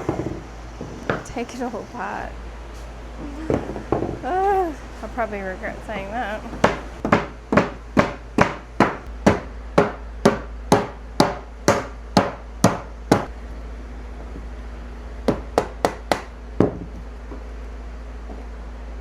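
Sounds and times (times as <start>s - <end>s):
steady low hum: 0.0s - 19.0s
hammer striking wood: 6.6s - 13.3s, 15.3s - 16.9s.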